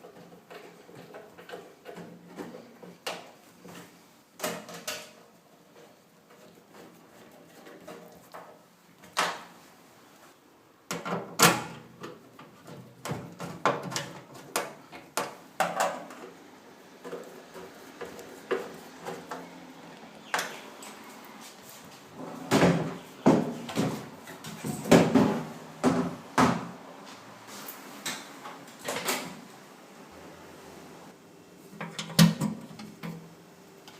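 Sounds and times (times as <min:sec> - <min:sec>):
microwave parts knocking and clunking: 0:10.9 - 0:16.3, 0:22.5 - 0:26.7, 0:31.8 - 0:33.3.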